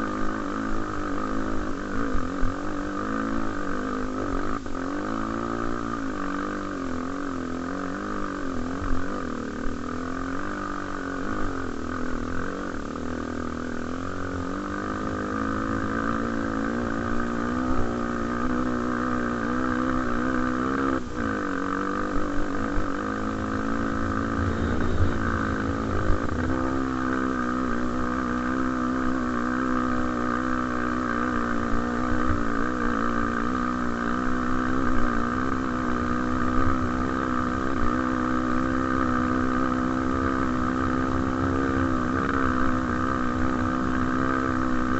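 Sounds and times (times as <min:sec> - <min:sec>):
motorcycle engine running: 0:00.0 - 0:44.9.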